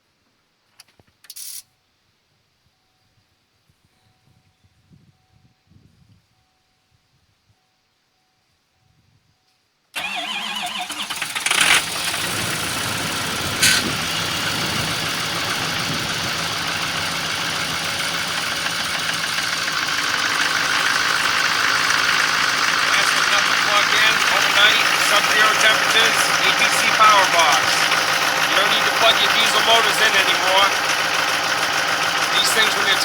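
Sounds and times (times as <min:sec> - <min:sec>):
diesel engine idling: 0:10.0 - 0:33.0
engine bursts: 0:10.0 - 0:33.0
engine cranking: 0:10.0 - 0:33.0.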